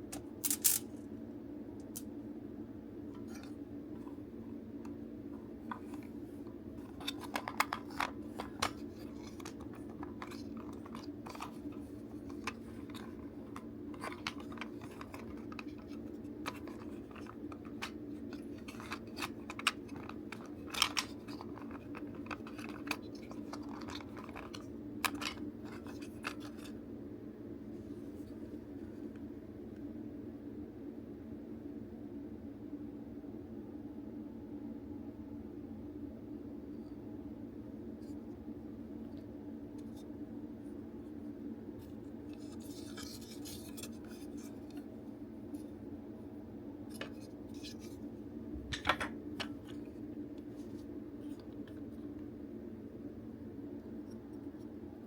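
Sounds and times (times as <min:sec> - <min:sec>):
steady low hum: 0:00.0 - 0:55.0
small hard parts clicking: 0:00.4 - 0:00.8, 0:06.8 - 0:26.7.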